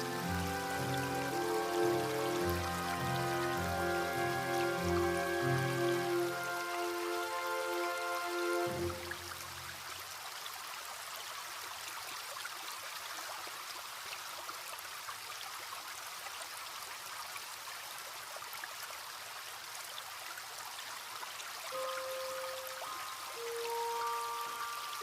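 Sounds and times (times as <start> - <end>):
small stream babbling: 0.0 - 25.0.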